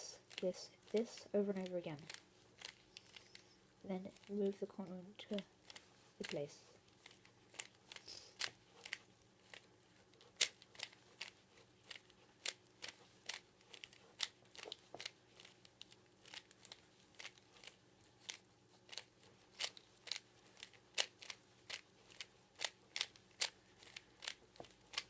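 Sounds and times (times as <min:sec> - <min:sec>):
plastic puzzle cube clicks: 0:00.3 - 0:03.4, 0:10.3 - 0:25.0.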